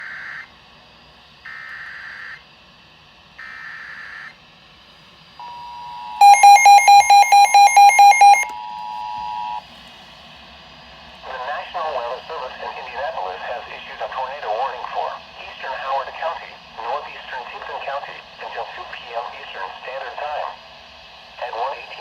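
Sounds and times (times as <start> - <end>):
steady two-tone attention signal: 5.4 - 9.6
loud rapid beeping: 6.2 - 9.6.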